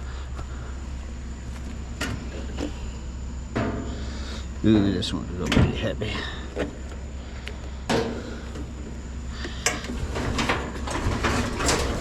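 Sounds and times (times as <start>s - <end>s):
steady low hum: 0.0s - 12.0s
heavy scrap knocking and clanking: 9.9s - 12.0s.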